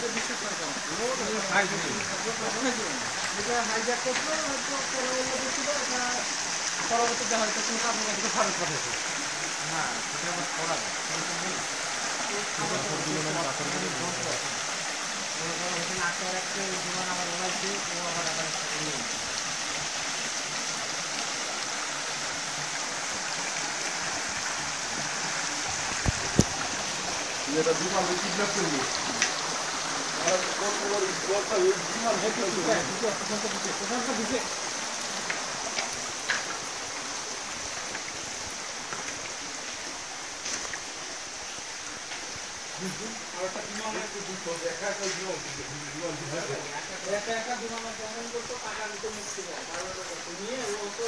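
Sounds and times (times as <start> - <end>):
water rushing: 0.0 - 51.0.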